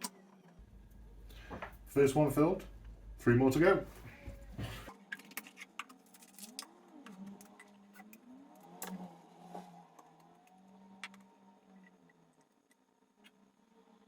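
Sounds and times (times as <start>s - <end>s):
plastic bottles and caps clicking: 4.9s - 8.1s.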